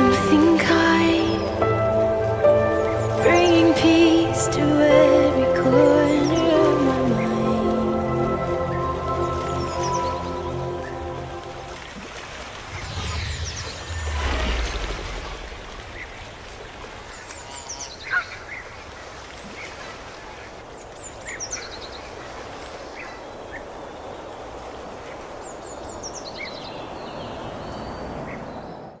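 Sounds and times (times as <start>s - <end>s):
low rumble: 12.5s - 17.4s
falling run of high chirps: 12.6s - 16.7s.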